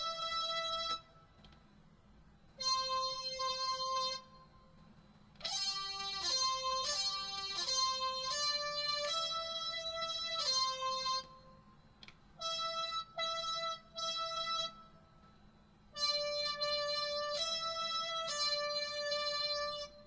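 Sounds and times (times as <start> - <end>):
digital wind instrument melody: 0.0 - 1.1, 2.6 - 4.3, 5.4 - 11.3, 12.4 - 14.9, 16.0 - 20.0.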